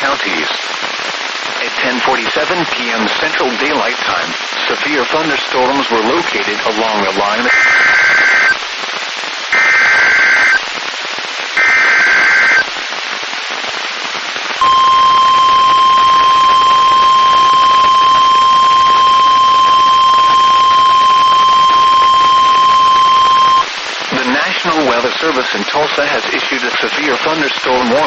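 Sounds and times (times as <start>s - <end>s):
radio hiss: 0.0s - 8.6s, 9.4s - 12.8s, 14.4s - 28.0s
digital data bursts: 7.4s - 8.6s, 9.6s - 10.6s, 11.6s - 12.7s, 14.6s - 23.7s
steady warning alarm tone: 7.5s - 8.6s, 9.6s - 10.6s, 11.6s - 12.6s, 14.6s - 23.6s.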